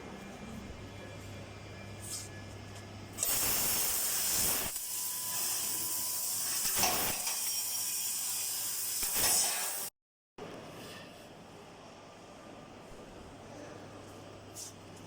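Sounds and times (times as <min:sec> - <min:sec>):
laser cutter gas hiss: 0:03.2 - 0:09.9.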